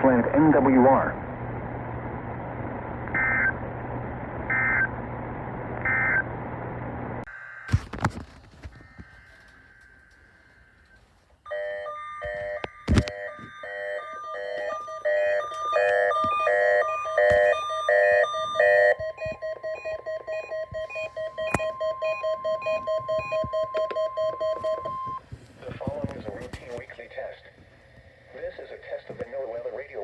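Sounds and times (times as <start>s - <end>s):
electronic alert beeping: 11.5s - 25.2s
steady high tone: 11.5s - 25.2s.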